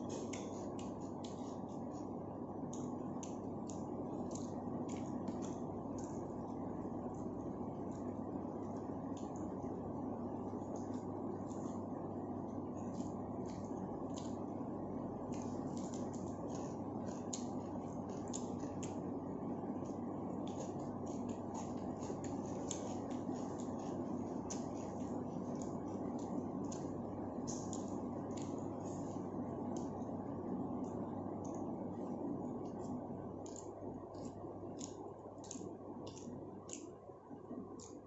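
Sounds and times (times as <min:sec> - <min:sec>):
person chewing food: 0:00.1 - 0:09.4, 0:12.7 - 0:14.5, 0:15.2 - 0:19.1, 0:19.8 - 0:30.1, 0:32.6 - 0:37.0.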